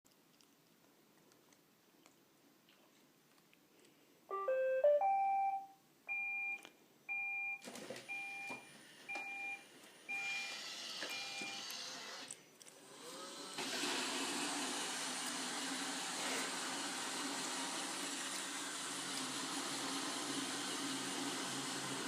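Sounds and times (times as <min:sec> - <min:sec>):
rising electronic tune: 0:04.3 - 0:05.7
two-note beep: 0:04.3 - 0:06.6
robot vacuum motor whirring: 0:10.0 - 0:22.0.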